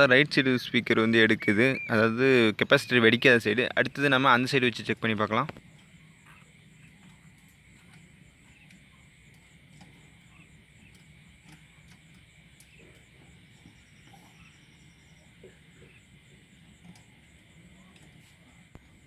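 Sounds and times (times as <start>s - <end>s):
low hum and hiss: 0.0s - 19.0s
rapid high ticking: 0.0s - 19.0s.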